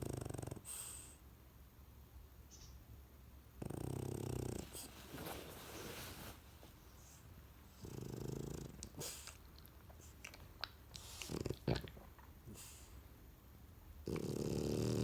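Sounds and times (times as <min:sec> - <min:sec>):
dog snoring: 0:00.0 - 0:01.1, 0:03.6 - 0:04.9, 0:07.8 - 0:09.4, 0:11.0 - 0:12.8, 0:14.0 - 0:15.0
dog snort: 0:03.6 - 0:04.9, 0:07.8 - 0:12.8, 0:14.0 - 0:15.0
wet lip-smacking clicks: 0:08.7 - 0:12.3.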